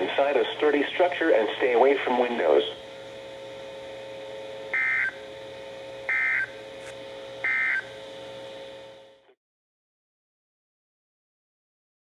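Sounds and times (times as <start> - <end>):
steady radio hum: 0.0 - 5.3, 6.1 - 7.9.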